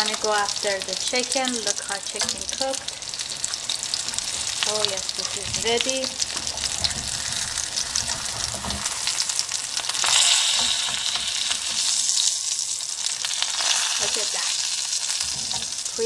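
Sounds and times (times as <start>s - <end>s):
chicken sizzling in oil: 0.0s - 16.0s.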